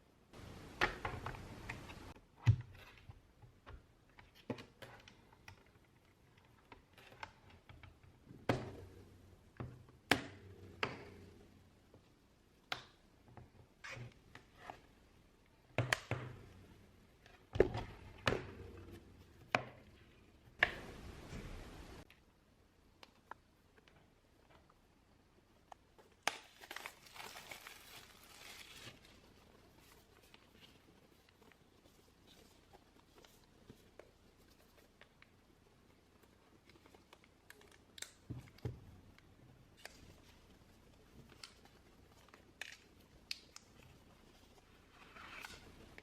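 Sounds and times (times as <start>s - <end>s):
rustling noise: 17.8s - 22.1s, 26.6s - 37.4s.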